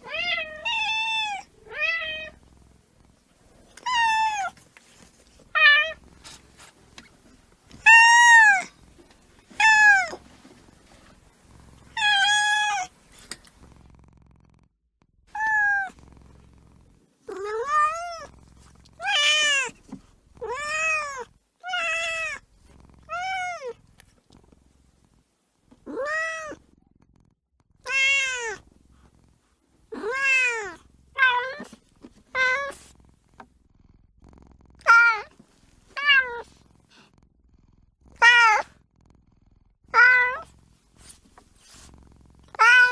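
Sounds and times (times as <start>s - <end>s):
kitten meowing: 7.8s - 8.7s, 12.0s - 12.9s, 15.4s - 16.0s, 27.8s - 28.6s, 38.2s - 38.7s, 39.9s - 40.5s, 42.6s - 42.9s.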